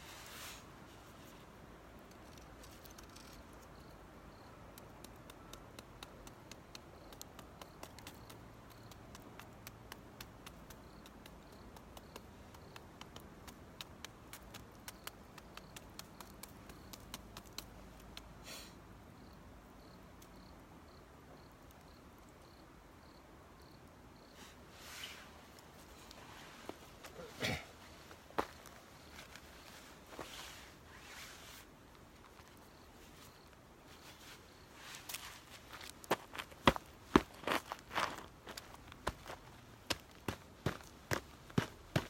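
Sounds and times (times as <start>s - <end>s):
insect chirping: 2.0s - 42.0s
campfire crackling: 4.5s - 18.3s.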